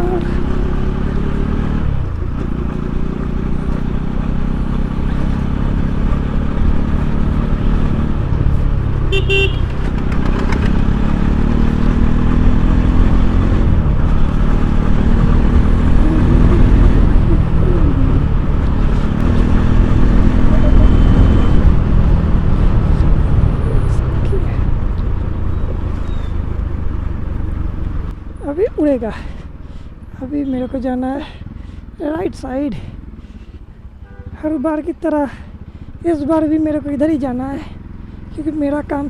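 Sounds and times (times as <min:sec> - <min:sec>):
motorcycle engine rumble: 0:00.0 - 0:39.0
vehicle horn beep: 0:09.1 - 0:09.9, 0:34.0 - 0:34.4.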